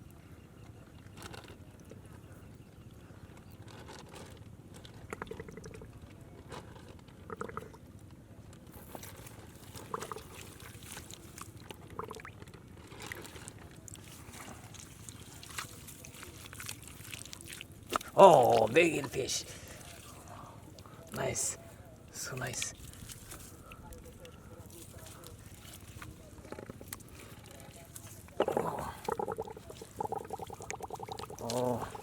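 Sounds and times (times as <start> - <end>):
hands splashing in muddy water: 13.2 - 21.2, 22.4 - 32.0.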